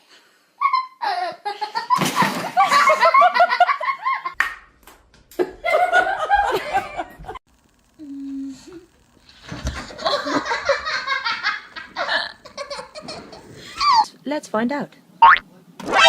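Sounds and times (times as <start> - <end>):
people laughing hard: 1.0 - 4.4, 5.4 - 7.4, 9.8 - 14.0.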